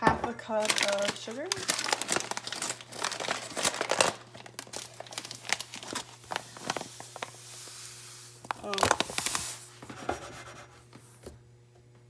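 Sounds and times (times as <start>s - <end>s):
bag crinkling and rustling: 0.6s - 9.9s.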